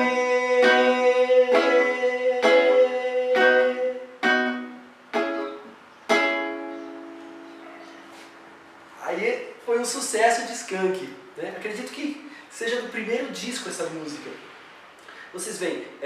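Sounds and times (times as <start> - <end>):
acoustic guitar strummed chords: 0.0 - 8.1.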